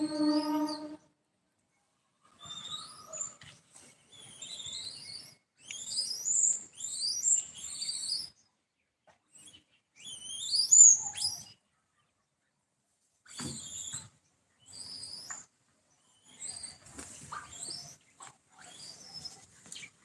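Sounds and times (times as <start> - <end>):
high-pitched animal squeaks: 0.0 - 1.0.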